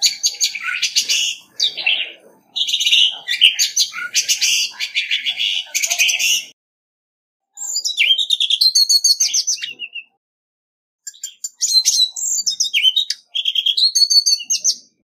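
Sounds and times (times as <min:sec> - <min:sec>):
thrush singing: 0:00.0 - 0:06.6.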